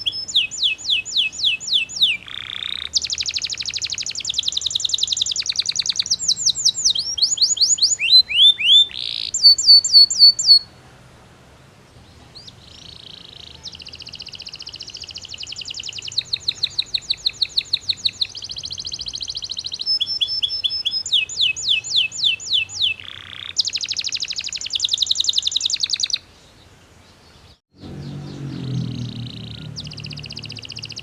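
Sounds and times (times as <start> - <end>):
canary singing trills: 0.0 - 10.7, 12.0 - 26.3, 27.3 - 31.0
low hum: 27.8 - 31.0.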